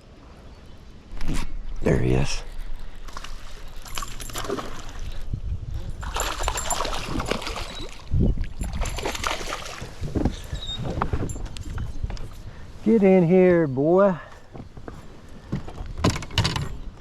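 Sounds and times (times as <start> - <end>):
water splashing and sloshing: 0.8 - 12.4
fish thrashing at water surface: 6.0 - 10.1.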